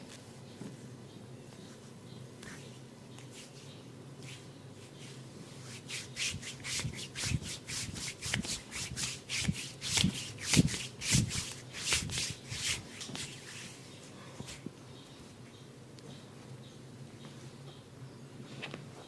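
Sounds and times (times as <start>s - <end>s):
hands rubbing over head: 4.2s - 14.6s.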